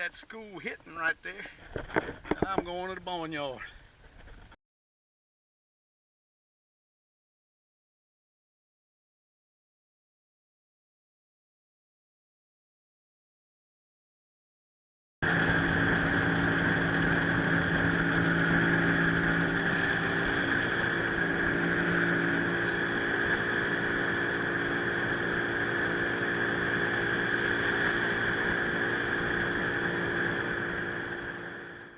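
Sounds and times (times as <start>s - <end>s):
constant hiss: 0.0s - 4.5s
outboard motor running: 15.2s - 31.9s.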